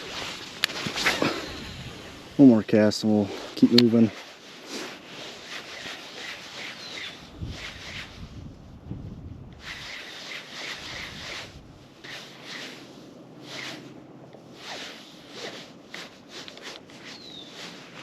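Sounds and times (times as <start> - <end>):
fishing reel rasping: 5.2 - 8.1, 9.6 - 12.8, 14.6 - 17.8.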